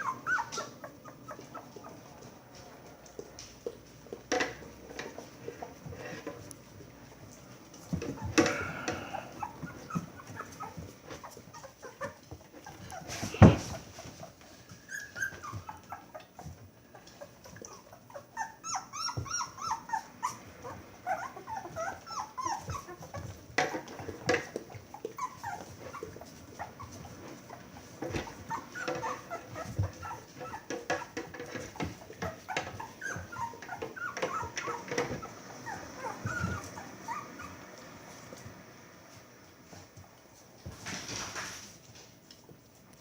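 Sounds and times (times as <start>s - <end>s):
puppies whimpering and squeaking: 0.0s - 42.8s.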